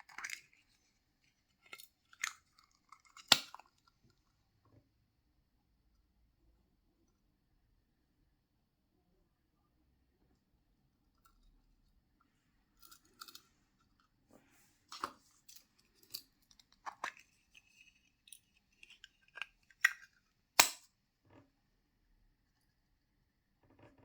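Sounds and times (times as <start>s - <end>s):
sharp snap: 20.6s - 20.9s.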